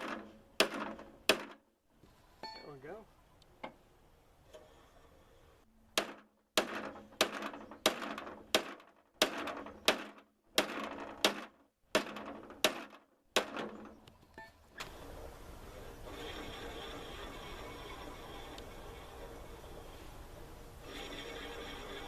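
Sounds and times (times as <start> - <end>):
hammer beating sheet metal: 0.0 - 1.6, 6.0 - 13.9.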